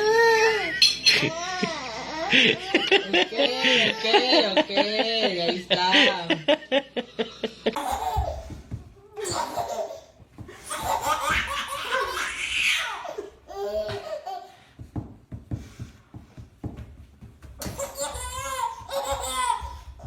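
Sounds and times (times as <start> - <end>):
baby laughing: 7.8 - 8.5, 9.2 - 14.6, 17.6 - 20.0.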